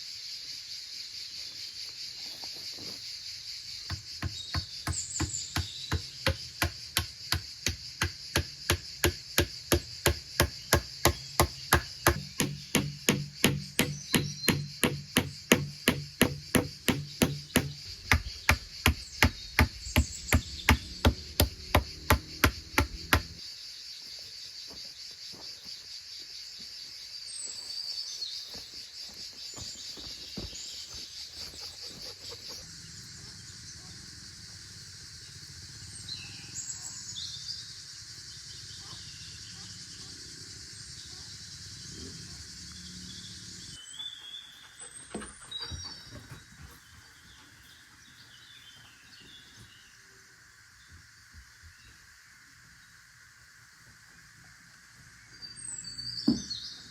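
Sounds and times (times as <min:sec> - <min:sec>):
insects chirring: 0:00.0 - 0:56.9
fast sharp blows: 0:12.1 - 0:23.4.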